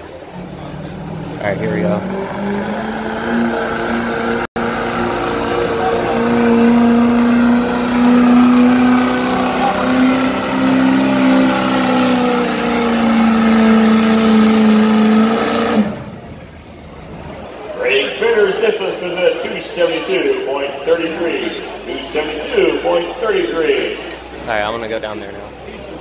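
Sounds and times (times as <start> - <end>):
vehicle engine at full throttle: 0.0 - 17.8.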